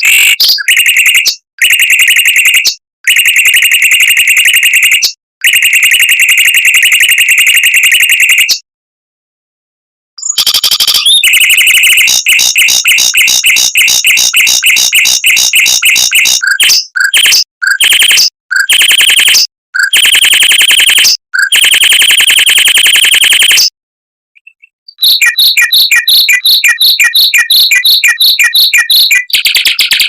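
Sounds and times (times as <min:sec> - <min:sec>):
mockingbird singing: 0:00.0 - 0:01.4, 0:10.2 - 0:18.7, 0:24.4 - 0:30.0.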